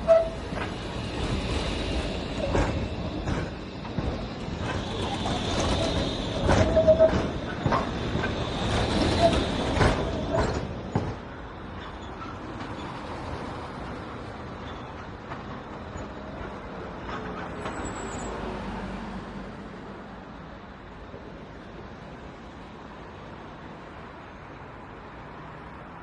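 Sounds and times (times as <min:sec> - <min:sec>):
tram rolling rumble: 0:00.0 - 0:26.0.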